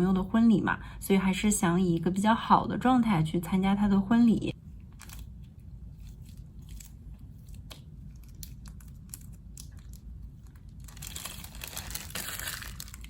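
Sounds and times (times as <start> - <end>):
low steady hum: 0.0 - 13.0
crinkling rustle: 4.8 - 13.0.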